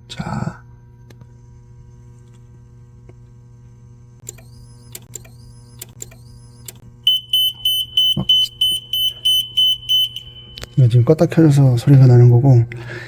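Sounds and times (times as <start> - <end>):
steady electrical hum: 0.0 - 13.0
sharp buzzing clicks: 4.2 - 10.8
rapid high-pitched beeping: 7.1 - 10.9.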